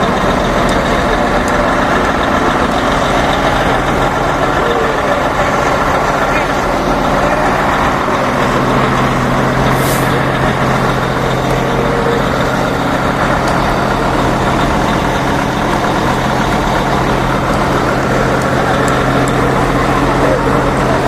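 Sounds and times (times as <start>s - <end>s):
diesel truck engines idling: 0.0s - 21.0s
air brake hiss: 9.7s - 10.1s.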